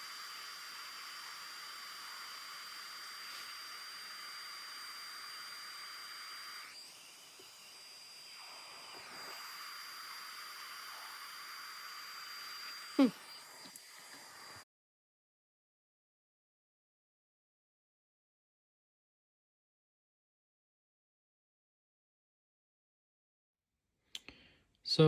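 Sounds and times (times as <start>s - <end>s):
hot-air wand hissing: 0.0s - 14.6s.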